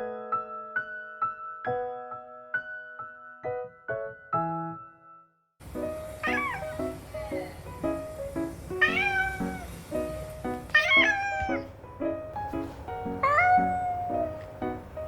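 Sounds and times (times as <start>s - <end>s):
cat meowing: 6.2s - 7.0s, 8.8s - 9.8s, 10.7s - 11.8s, 13.0s - 14.6s.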